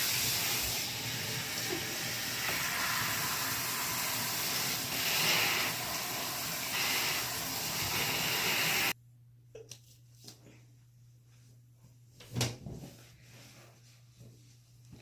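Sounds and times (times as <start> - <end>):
loud rushing hiss: 2.5 - 8.9.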